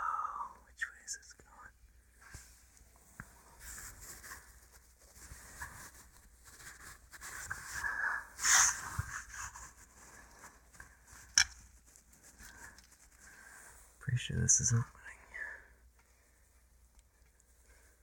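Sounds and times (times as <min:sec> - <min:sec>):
hands scraping and handling: 0:02.3 - 0:13.6
short air hiss: 0:08.4 - 0:09.0.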